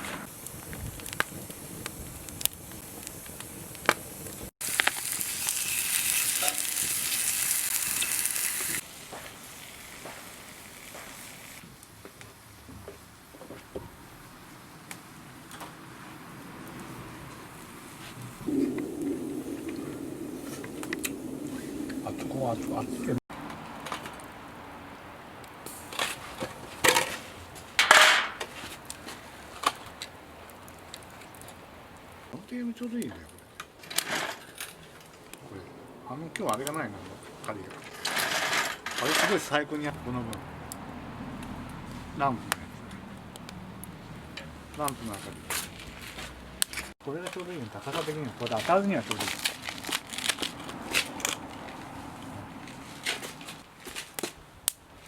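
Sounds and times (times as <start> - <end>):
food sizzling in frying pan: 0.0 - 11.6
sharp clicks and crackles: 18.5 - 24.4, 27.8 - 32.1, 49.1 - 51.9, 53.0 - 54.8
scraping clatter: 37.6 - 39.6.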